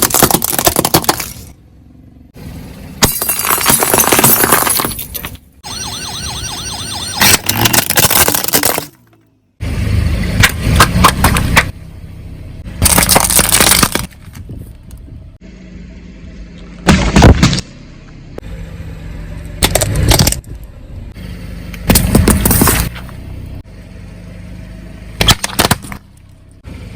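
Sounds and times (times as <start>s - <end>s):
objects crushed under car tyres: 0.0s - 1.5s, 3.0s - 5.5s, 7.2s - 9.2s, 12.8s - 14.5s, 16.8s - 17.7s, 21.9s - 23.1s, 25.2s - 26.1s
car engine humming: 0.5s - 8.0s, 8.9s - 26.9s.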